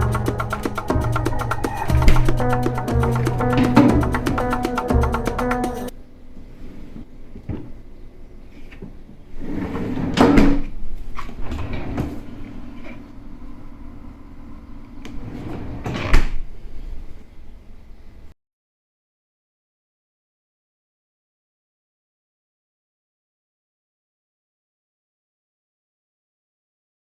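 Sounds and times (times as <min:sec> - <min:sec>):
background music: 0:00.0 - 0:05.9.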